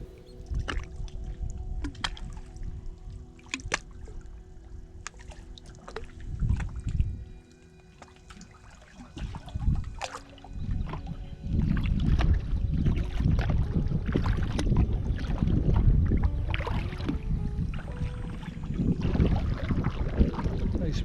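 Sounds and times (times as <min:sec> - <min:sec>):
wind buffeting microphone: 0:00.0 - 0:07.4, 0:08.5 - 0:21.0
water sloshing: 0:00.0 - 0:21.0
paddle splashes: 0:05.0 - 0:07.1, 0:07.9 - 0:20.8.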